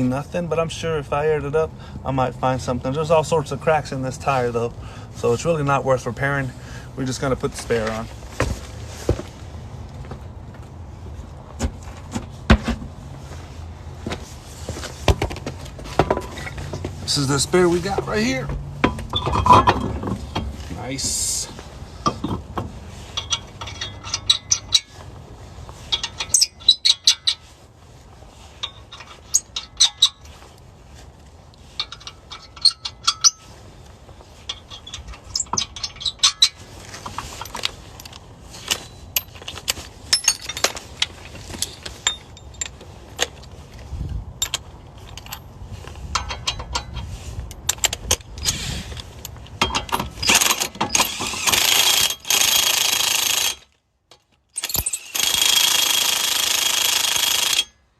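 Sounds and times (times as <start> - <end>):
lug nuts clinking and rattling: 15.1 - 25.2, 25.8 - 27.6, 28.5 - 30.5, 31.6 - 57.9
impact wrench hammering: 54.6 - 57.8.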